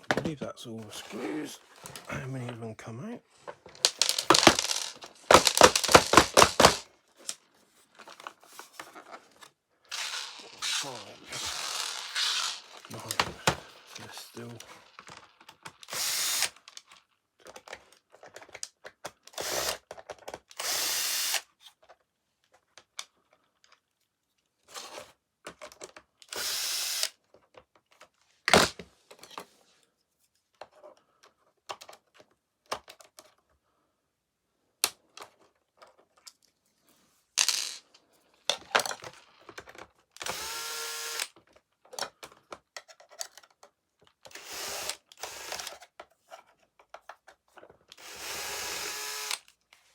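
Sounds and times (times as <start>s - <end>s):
plastic and screws rattling: 3.5s - 20.6s, 27.3s - 29.4s, 37.4s - 48.1s
power screwdriver running: 3.8s - 6.8s, 9.9s - 13.7s, 15.8s - 16.6s, 19.4s - 19.8s, 20.6s - 21.4s, 26.3s - 27.1s, 40.2s - 41.3s, 44.3s - 45.8s, 48.0s - 49.5s.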